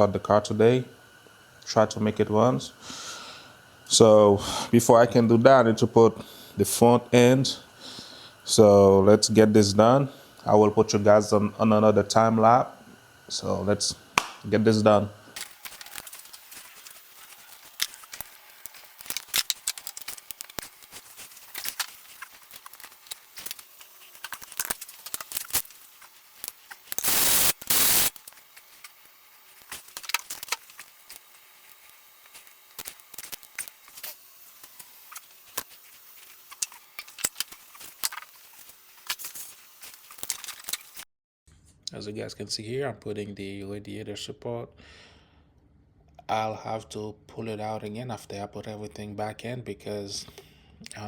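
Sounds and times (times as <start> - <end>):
loud burst of noise: 26.9 - 28.3.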